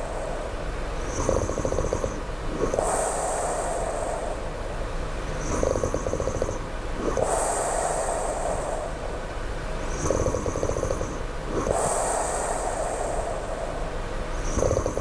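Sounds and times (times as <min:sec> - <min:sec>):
person snoring: 0:01.1 - 0:02.8, 0:14.4 - 0:15.0.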